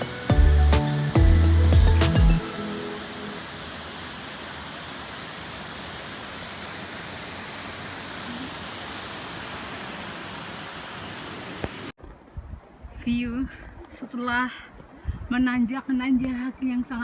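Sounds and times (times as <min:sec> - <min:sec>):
stream rushing over rocks: 0:00.0 - 0:12.0.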